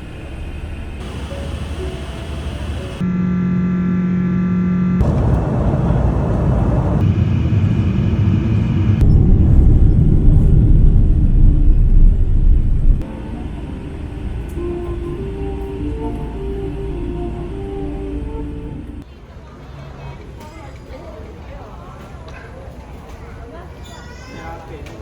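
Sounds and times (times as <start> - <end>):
loud low rumble: 0.0 - 19.0
jet engine tone: 0.6 - 19.0.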